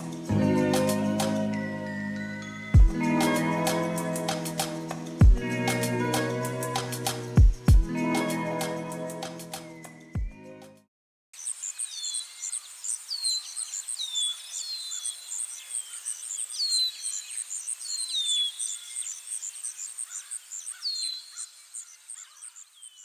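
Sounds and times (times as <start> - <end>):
insect chirping: 0.0 - 1.5, 11.4 - 23.0.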